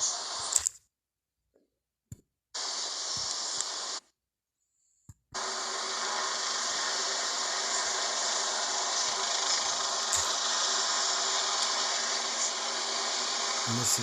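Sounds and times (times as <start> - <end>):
steady rushing noise: 5.4 - 14.0.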